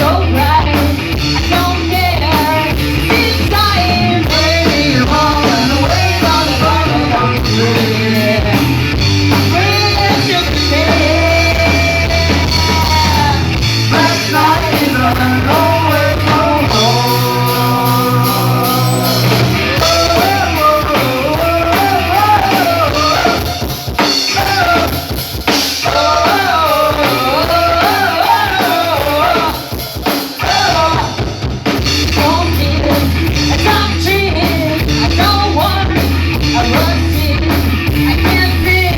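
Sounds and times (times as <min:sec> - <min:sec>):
person singing: 0:00.0 - 0:31.3, 0:32.0 - 0:38.9
rock band playing: 0:00.0 - 0:38.9.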